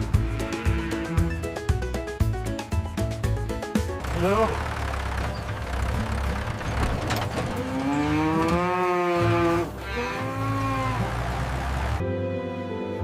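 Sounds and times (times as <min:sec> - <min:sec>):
cow mooing: 0:00.1 - 0:01.4, 0:04.1 - 0:04.6, 0:07.6 - 0:12.0.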